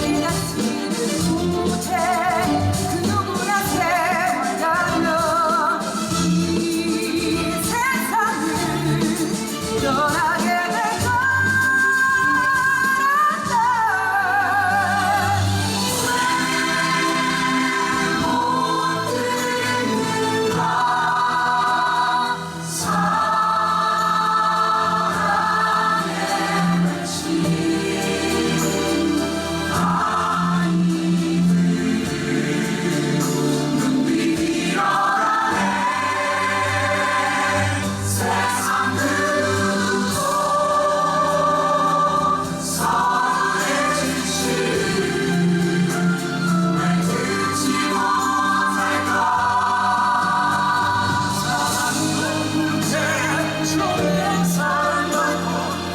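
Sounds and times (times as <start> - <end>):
stage musical accompaniment: 0.0 - 55.9
choir singing held chords: 14.0 - 55.9.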